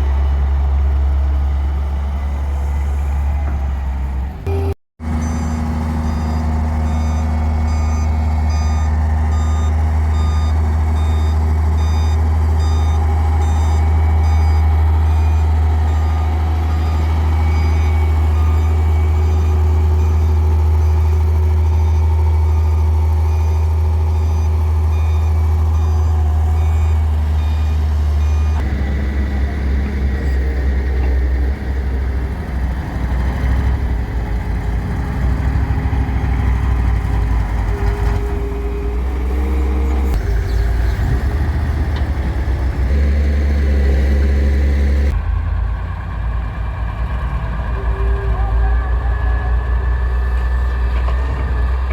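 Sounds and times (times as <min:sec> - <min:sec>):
diesel machinery engine: 0:00.0 - 0:51.9
reversing alarm beeps: 0:04.5 - 0:28.6.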